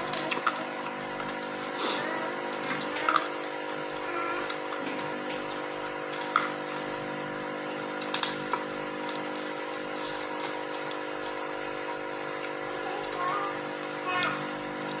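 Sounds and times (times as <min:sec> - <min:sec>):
steady hum: 0:00.0 - 0:15.0
sharp eating clicks and taps: 0:12.4 - 0:15.0.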